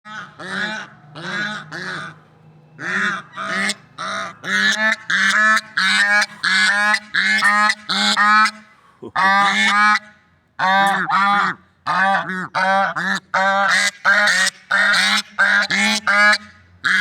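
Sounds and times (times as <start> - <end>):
swans calling: 0.1 - 10.0.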